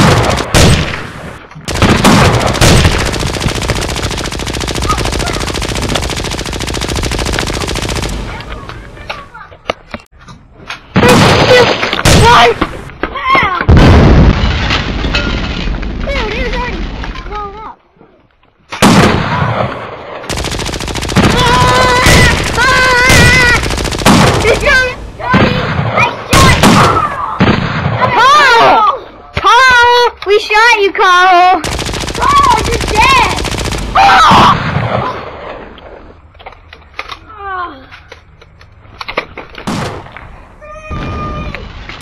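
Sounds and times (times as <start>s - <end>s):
automatic gunfire: 1.7s - 8.5s, 20.3s - 25.7s, 31.6s - 34.4s.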